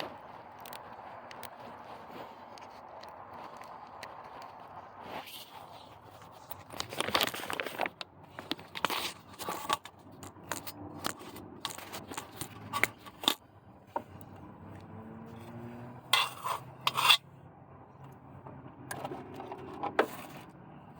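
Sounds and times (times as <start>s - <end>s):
tools clicking and scraping: 5.2s - 17.3s.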